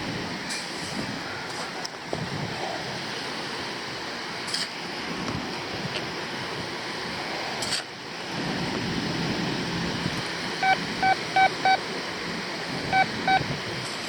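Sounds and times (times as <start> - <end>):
wind: 0.0 - 14.0
metal detector beeps: 10.6 - 11.8, 12.9 - 13.4.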